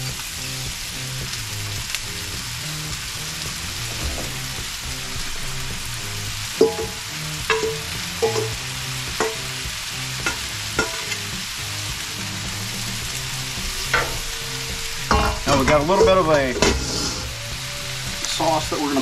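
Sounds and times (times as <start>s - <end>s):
stir-fry sizzling on griddle: 0.0s - 19.0s
metal spatula clinking on steel: 6.6s - 8.6s, 9.2s - 9.5s, 10.2s - 11.2s.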